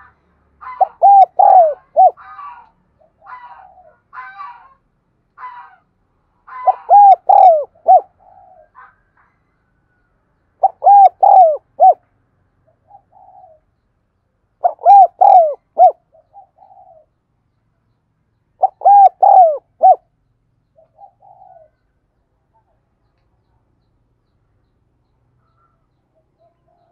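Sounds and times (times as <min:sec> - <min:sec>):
dove cooing: 0:00.6 - 0:04.0, 0:06.6 - 0:08.9, 0:10.6 - 0:12.0, 0:12.7 - 0:13.6, 0:14.6 - 0:17.1, 0:18.6 - 0:20.1, 0:20.8 - 0:21.8.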